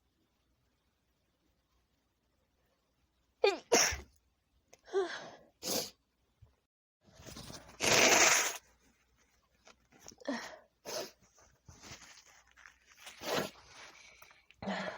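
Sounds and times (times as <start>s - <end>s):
woman sneezing: 3.4s - 4.0s
breathy sounds: 13.0s - 14.9s.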